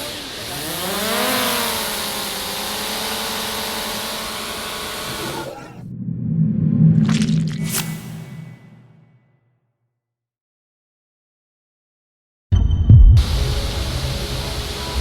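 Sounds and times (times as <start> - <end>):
drone propellers whining: 0.0 - 7.0, 13.2 - 15.0.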